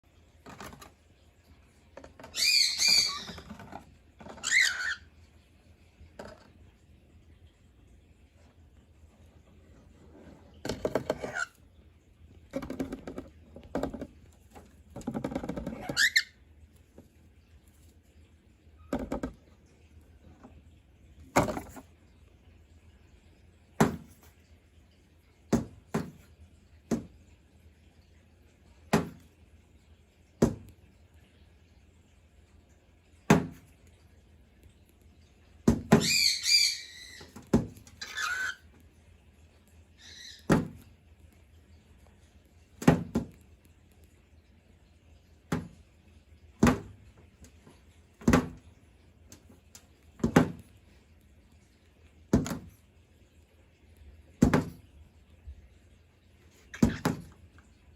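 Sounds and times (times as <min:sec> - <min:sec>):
birds rustling and scuffling: 0:00.2 - 0:07.6.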